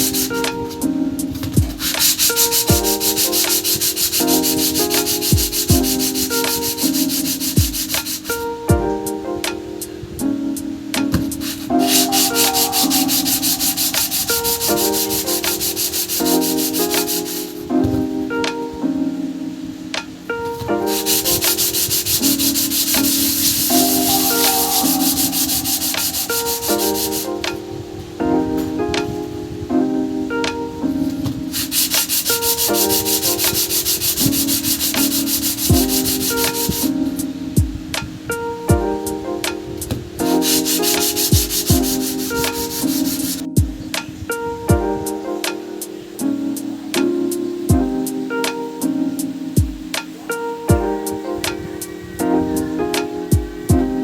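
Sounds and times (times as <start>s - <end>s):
hissing rubbing noise: 0.0s - 9.2s, 10.0s - 17.7s, 20.5s - 28.2s, 31.3s - 37.4s, 39.7s - 54.0s
electronic music: 0.0s - 54.0s
hand sanding strokes: 1.8s - 8.4s, 11.4s - 17.6s, 20.9s - 27.3s, 31.6s - 36.8s, 40.4s - 43.4s.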